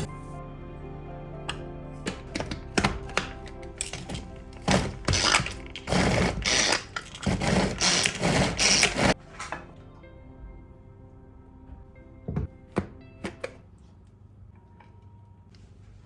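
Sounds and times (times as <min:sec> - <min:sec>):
soft background music: 0:00.0 - 0:16.0
electric kitchen motor pulses: 0:02.4 - 0:09.2.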